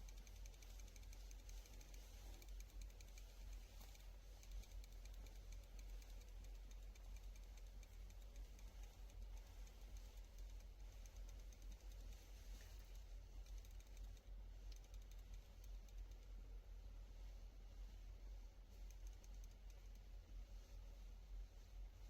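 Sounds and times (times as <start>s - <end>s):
fishing reel clicking: 0.0s - 16.3s.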